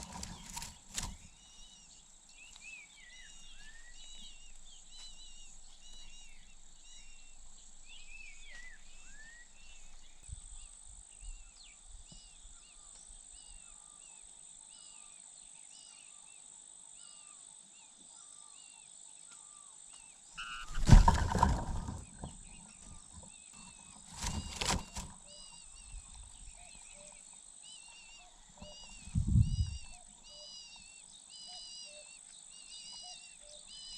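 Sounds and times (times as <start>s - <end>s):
loud rustles: 0.0s - 1.3s, 20.6s - 25.2s.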